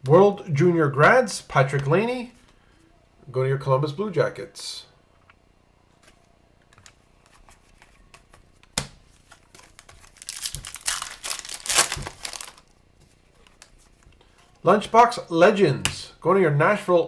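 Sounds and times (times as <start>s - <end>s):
foil wrapper crinkling and tearing: 9.2s - 12.7s.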